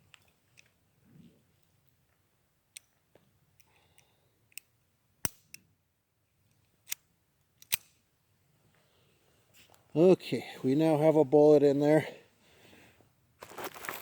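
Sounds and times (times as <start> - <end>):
pistol being racked metallic clicks: 4.5 - 5.6, 6.8 - 8.0.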